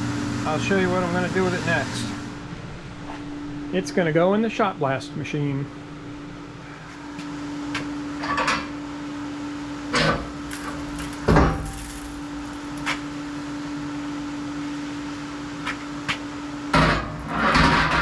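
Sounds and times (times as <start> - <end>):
metal cylinder head clunking: 10.0 - 13.0.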